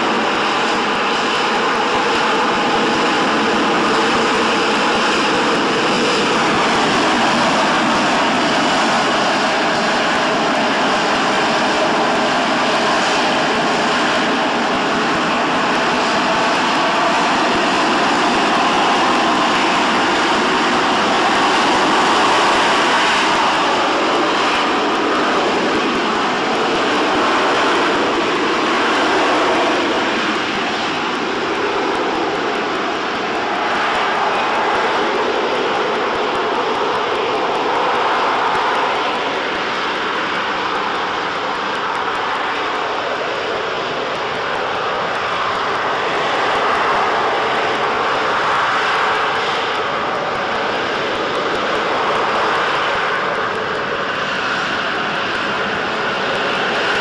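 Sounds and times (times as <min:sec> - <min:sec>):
jet engine roar with whine: 0:00.0 - 0:57.0.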